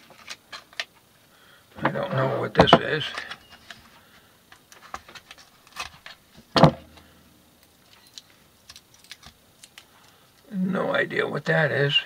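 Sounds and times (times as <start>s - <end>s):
small part clicks and rattles: 7.6s - 10.4s.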